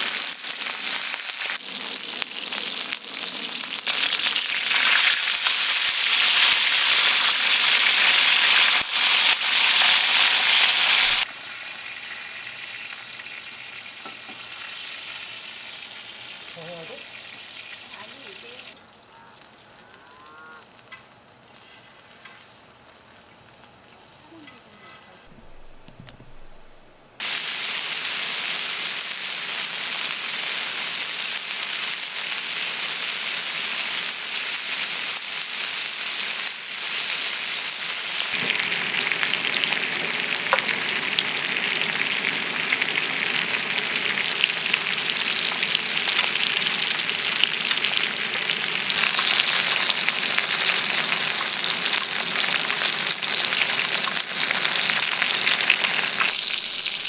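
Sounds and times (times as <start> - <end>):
food sizzling in a pan: 0.0 - 20.8, 27.2 - 57.0.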